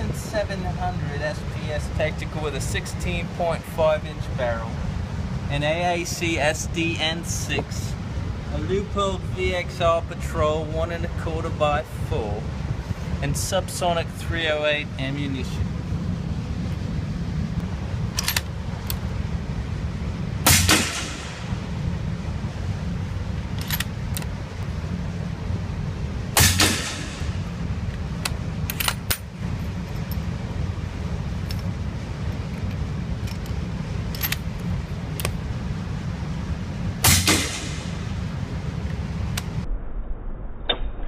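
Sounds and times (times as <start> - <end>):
steady low rumble: 0.0 - 41.0
suppressed rifle shots: 20.4 - 21.6, 26.4 - 27.4, 37.0 - 38.0.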